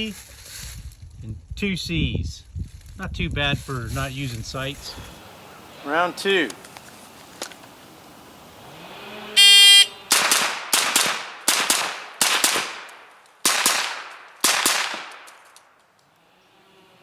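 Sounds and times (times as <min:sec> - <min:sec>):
rifle gunshots echoing: 0:10.1 - 0:15.4.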